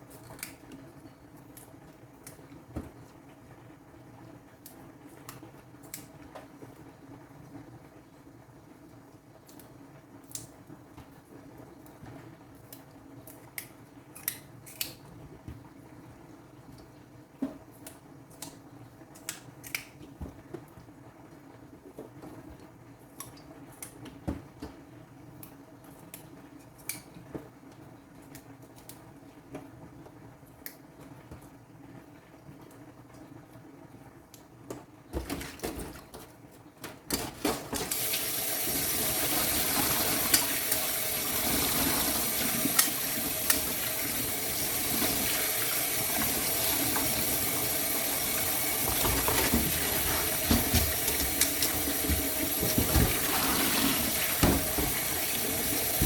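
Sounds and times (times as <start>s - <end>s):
tap water running into sink: 37.8s - 56.0s.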